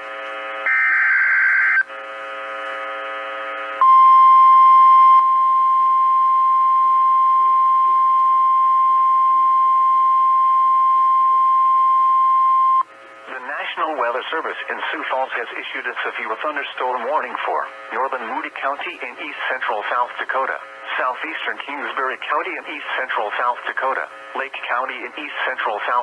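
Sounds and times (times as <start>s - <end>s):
steady alarm tone: 0.6s - 1.8s.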